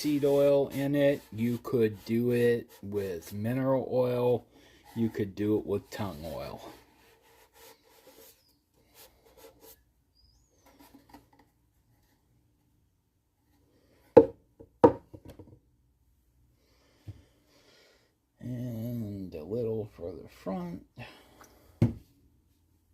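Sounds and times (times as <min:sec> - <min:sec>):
cloth pad rubbing wood: 0:00.0 - 0:03.6, 0:04.3 - 0:09.8.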